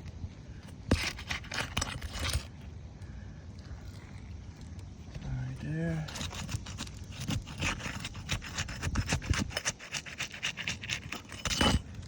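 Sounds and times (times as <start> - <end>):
shingles scraping and rubbing: 0.6 - 2.6, 5.9 - 12.0.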